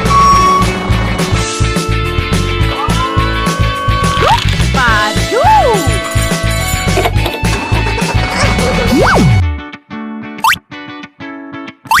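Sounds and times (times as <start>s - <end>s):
whistle glide: 0.0s - 0.8s.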